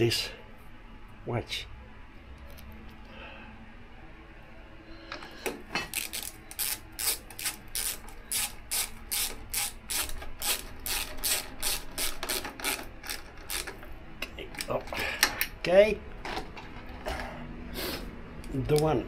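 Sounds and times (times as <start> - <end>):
hand ratchet clicking: 5.9 - 13.8.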